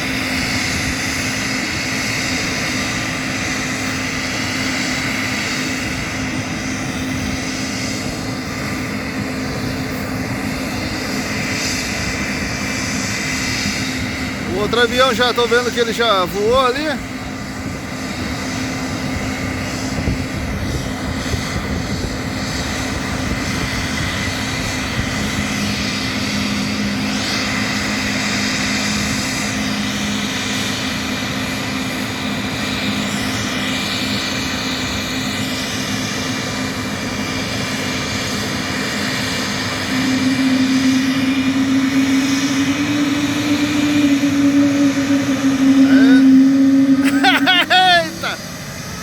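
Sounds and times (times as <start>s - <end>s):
jet engines humming: 0.0s - 49.0s
low engine tone rising: 39.4s - 49.0s.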